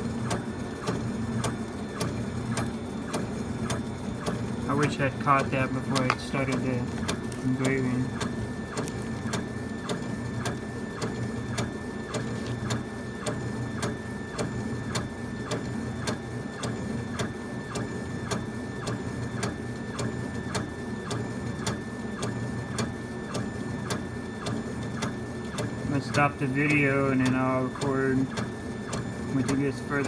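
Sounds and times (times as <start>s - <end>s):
laser engraver motor whine: 0.0s - 30.0s
engraver head clicking: 4.8s - 9.9s.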